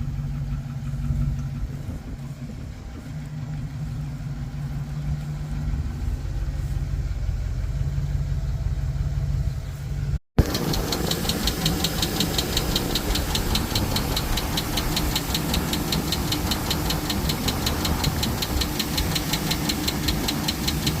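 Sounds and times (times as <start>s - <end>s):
engine idling: 0.0s - 21.0s
fast even engine ticking: 10.4s - 21.0s.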